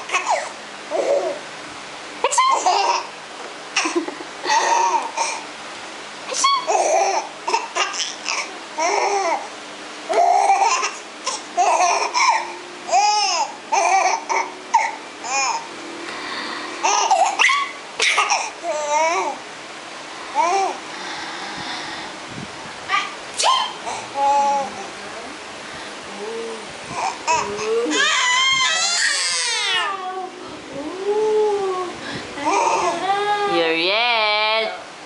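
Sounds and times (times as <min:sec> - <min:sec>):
baby laughing and babbling: 0:00.0 - 0:01.4, 0:02.3 - 0:03.1, 0:03.8 - 0:05.4, 0:06.3 - 0:15.7, 0:16.8 - 0:19.4, 0:20.3 - 0:20.8, 0:22.9 - 0:25.0, 0:26.5 - 0:33.5.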